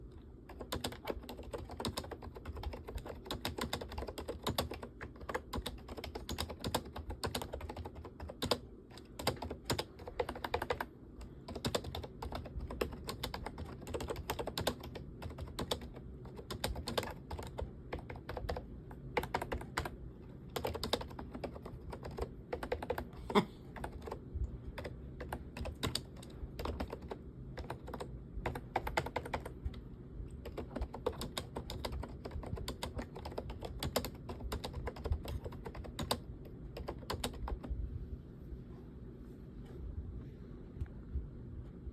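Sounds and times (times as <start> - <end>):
keyboard typing clicks: 0.5 - 18.6, 20.6 - 23.1.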